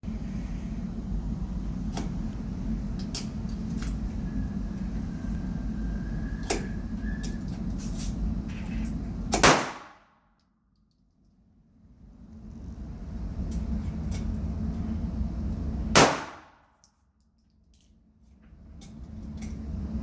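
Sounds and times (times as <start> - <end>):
low wind-like rumble: 0.0 - 9.7, 11.8 - 16.3
pistol shots: 9.4 - 10.1, 16.0 - 16.6.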